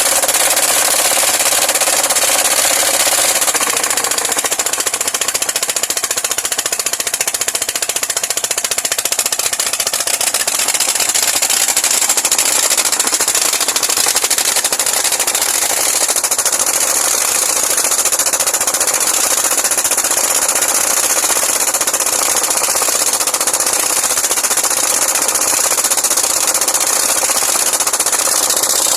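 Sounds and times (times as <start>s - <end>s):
mining machinery rattling: 0.0s - 28.9s.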